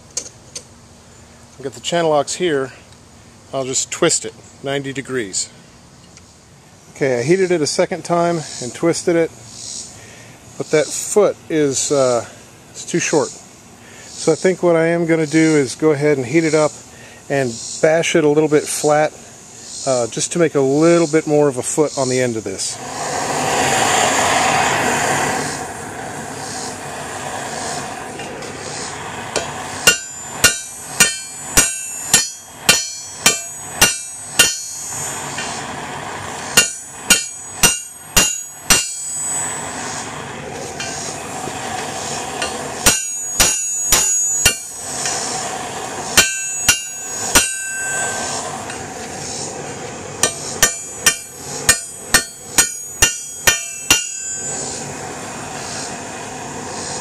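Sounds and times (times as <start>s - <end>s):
steady rushing noise: 22.3s - 57.0s
hammer striking hot steel on anvil: 29.3s - 35.7s, 36.5s - 39.7s, 40.8s - 41.1s, 41.8s - 45.2s, 46.2s - 48.9s, 50.2s - 54.8s.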